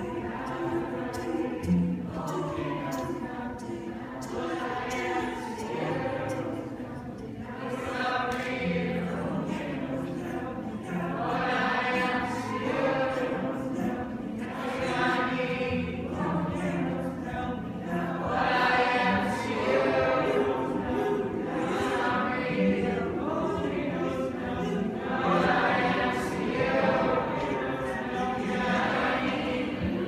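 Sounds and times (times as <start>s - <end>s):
audience singing along: 0.0s - 30.0s.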